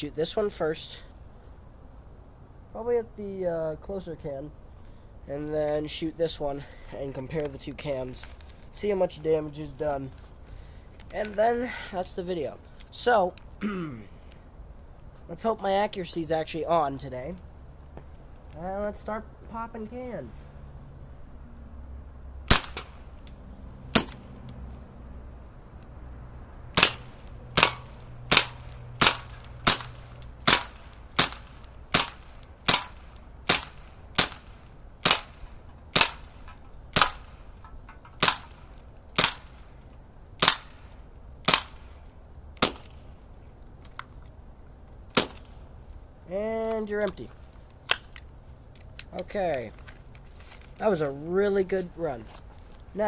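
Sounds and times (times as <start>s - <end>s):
low-powered gun shots: 22.5s - 23.0s.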